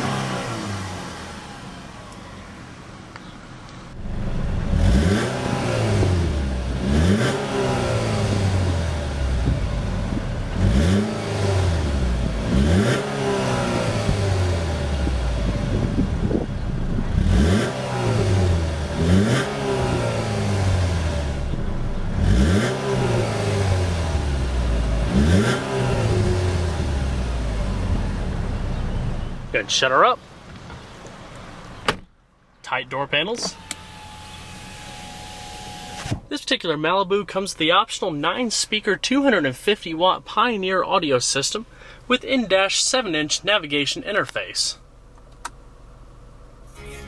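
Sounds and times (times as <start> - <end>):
car engine revving: 0.0 - 31.8.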